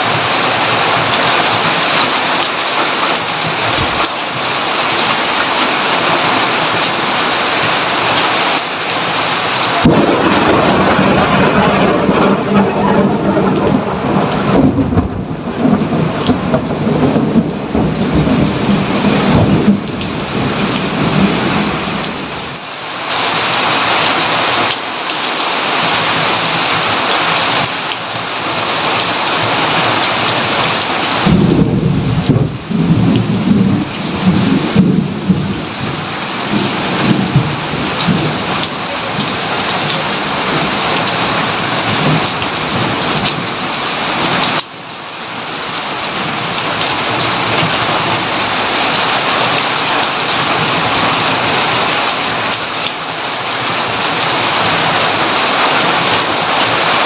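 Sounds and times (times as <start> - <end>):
steady rain falling: 0.0 - 57.0
rolling thunder: 9.8 - 22.5, 30.8 - 43.6.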